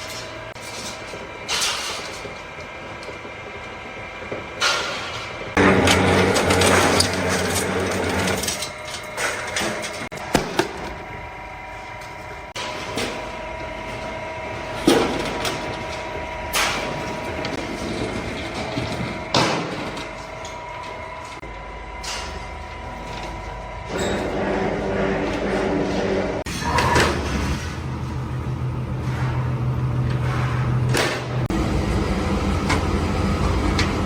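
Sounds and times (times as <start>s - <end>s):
machine humming: 0.0s - 34.0s.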